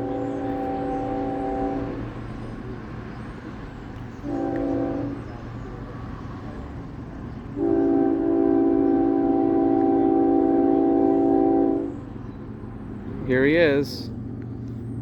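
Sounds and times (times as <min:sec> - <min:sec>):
locomotive air horn blasts: 0:00.0 - 0:02.2, 0:04.2 - 0:05.4, 0:07.6 - 0:12.1
train rumbling: 0:00.0 - 0:15.0.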